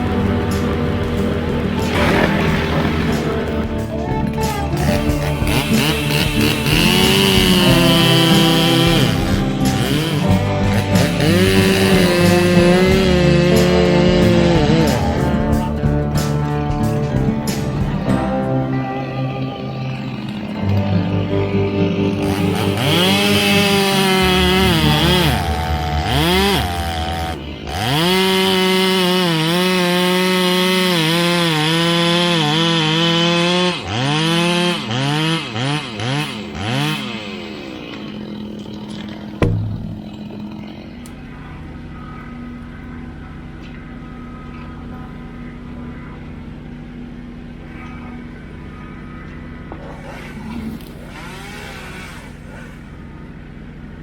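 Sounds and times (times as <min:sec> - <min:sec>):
chainsaw cutting at full throttle: 0:00.0 - 0:41.3, 0:49.8 - 0:53.0
sharp knock: 0:39.4 - 0:40.5.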